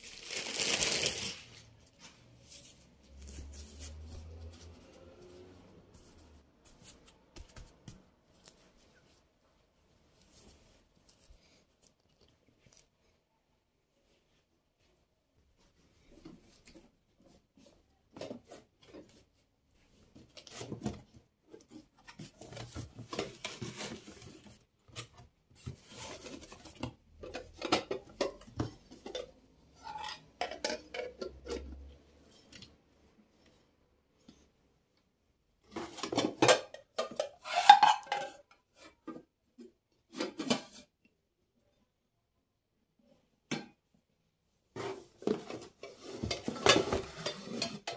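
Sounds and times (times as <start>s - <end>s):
dishes and cutlery clattering: 27.2s - 31.9s, 35.8s - 38.5s, 45.6s - 47.9s.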